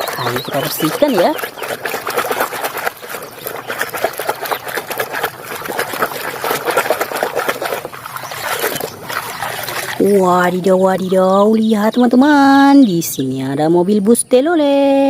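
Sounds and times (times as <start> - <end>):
water running and splashing: 0.0 - 11.9.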